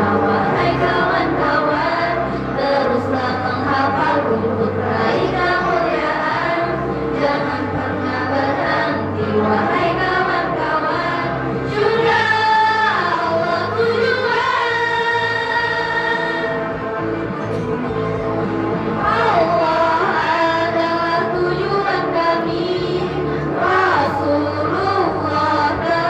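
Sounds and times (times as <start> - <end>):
choir singing in harmony: 0.0 - 26.0.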